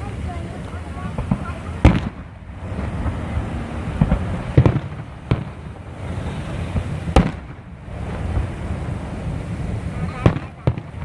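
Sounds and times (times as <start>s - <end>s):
fireworks exploding: 0.0s - 11.0s
steady low rumble: 0.0s - 11.0s.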